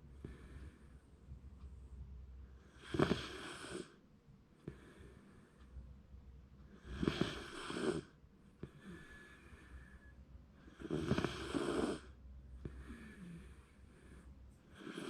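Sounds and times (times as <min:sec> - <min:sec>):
quiet dog breaths: 0:00.0 - 0:15.0
dog snoring: 0:02.6 - 0:04.0, 0:06.7 - 0:09.8, 0:10.7 - 0:13.7, 0:14.7 - 0:15.0.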